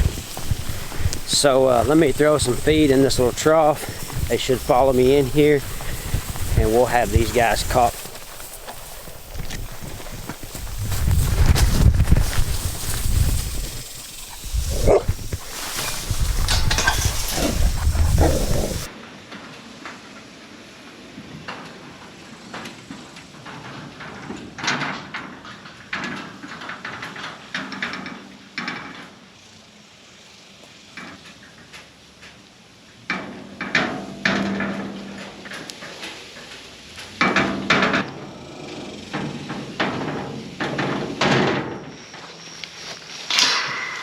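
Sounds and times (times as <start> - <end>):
gate knocking and rattling: 12.6 - 18.9, 33.1 - 35.6, 37.2 - 38.3, 39.1 - 41.8, 43.3 - 44.0.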